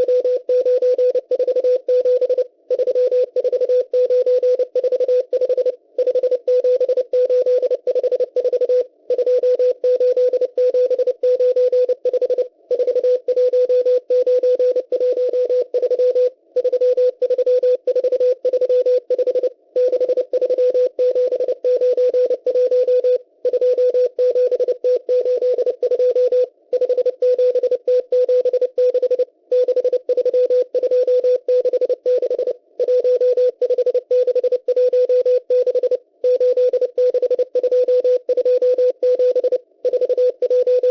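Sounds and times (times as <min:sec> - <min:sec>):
morse code beeps: 0:00.0 - 0:40.9.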